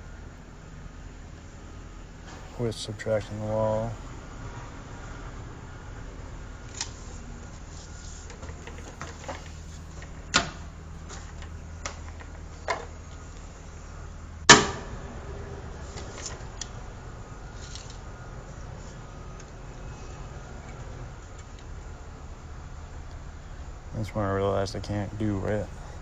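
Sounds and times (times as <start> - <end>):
steady low hum: 0.0 - 26.0
knocks of pipe and tools handled: 8.3 - 12.9.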